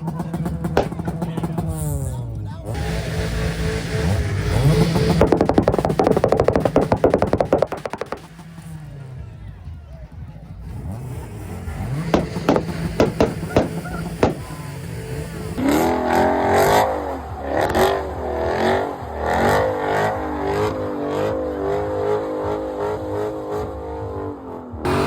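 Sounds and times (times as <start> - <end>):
sharp cracks: 0.0 - 3.0, 4.0 - 9.1, 11.1 - 21.0
car engine revving: 0.0 - 25.0.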